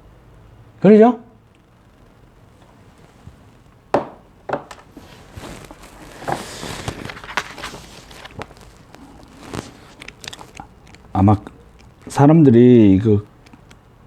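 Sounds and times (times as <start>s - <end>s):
rustling handling noise: 2.4s - 13.9s
sharp knocks: 3.9s - 4.9s
light clicks and taps: 13.0s - 13.8s.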